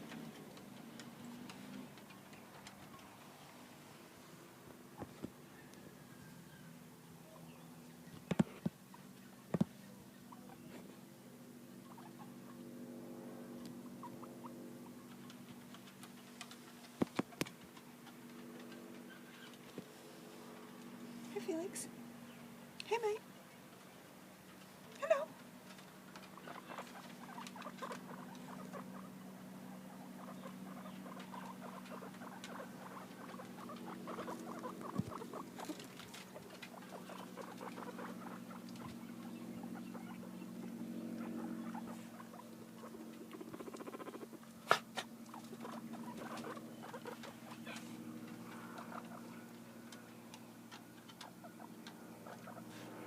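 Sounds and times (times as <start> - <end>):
steady low hum: 0.0 - 53.0
guinea pig sounds: 11.8 - 12.8, 13.6 - 19.6, 24.9 - 53.0.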